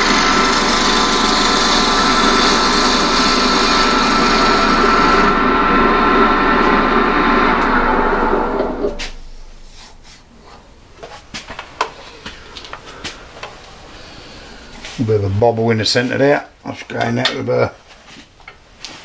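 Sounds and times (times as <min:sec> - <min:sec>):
wood lathe running: 0:00.0 - 0:09.3, 0:11.6 - 0:15.3.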